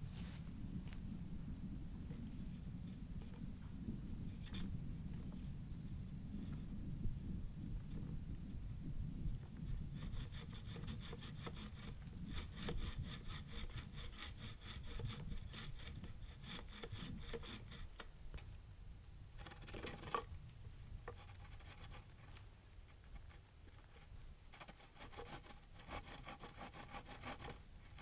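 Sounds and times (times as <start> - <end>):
hand saw cutting wood: 10.0 - 18.0, 19.4 - 20.3, 21.1 - 22.4, 23.0 - 28.0.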